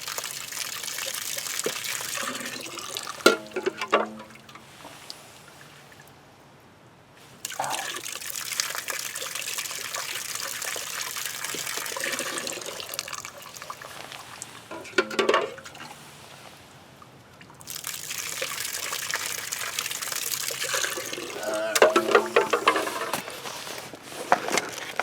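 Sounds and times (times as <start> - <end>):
water trickling into sink drain: 0.0 - 4.5, 7.5 - 14.0, 17.6 - 23.1.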